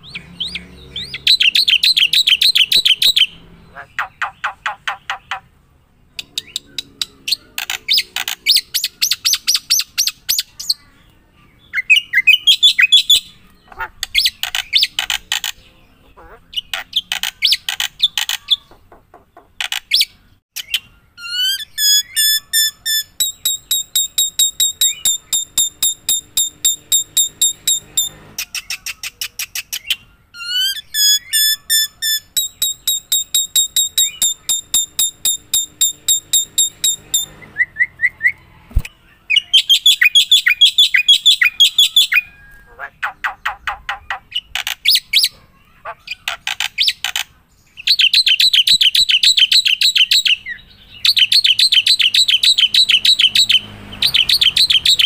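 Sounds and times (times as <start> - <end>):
songbird whistling: 0.0 - 3.4, 11.7 - 15.2, 19.9 - 38.5, 39.1 - 45.3, 47.8 - 55.0.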